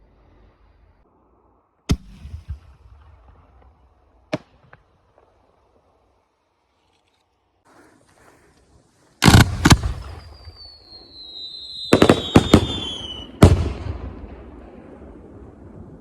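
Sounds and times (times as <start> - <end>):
fireworks bangs: 7.7 - 16.0
firework falling whistle: 9.2 - 14.0.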